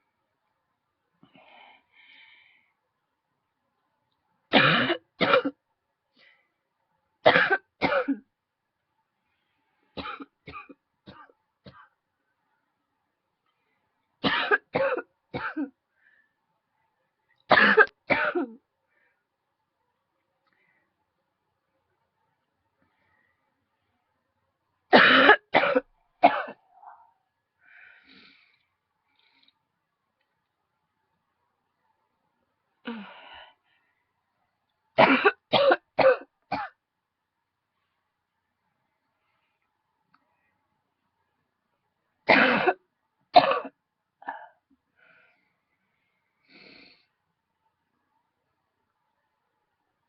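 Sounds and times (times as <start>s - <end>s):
woman coughing: 4.6s - 5.6s, 14.3s - 15.8s, 17.5s - 18.6s, 25.0s - 26.6s, 35.0s - 36.8s, 42.3s - 42.8s, 43.4s - 44.6s.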